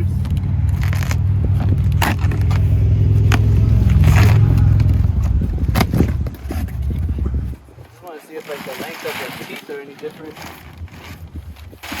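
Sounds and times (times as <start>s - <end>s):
low rumble: 0.0s - 8.0s
packaging scraping and crackling: 0.2s - 2.7s, 3.3s - 12.0s.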